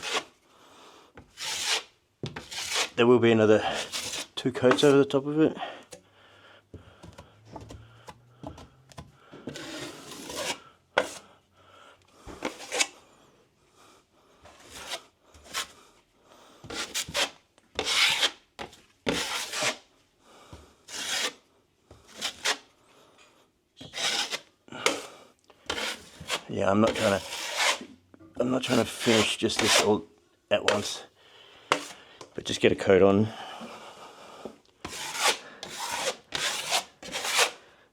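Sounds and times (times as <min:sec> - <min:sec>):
plastering blade scraping: 0:00.0 - 0:00.3, 0:01.2 - 0:03.0, 0:03.6 - 0:05.0, 0:09.5 - 0:11.2, 0:12.4 - 0:13.0, 0:23.8 - 0:25.1, 0:25.7 - 0:27.9, 0:28.6 - 0:30.0, 0:34.8 - 0:37.6.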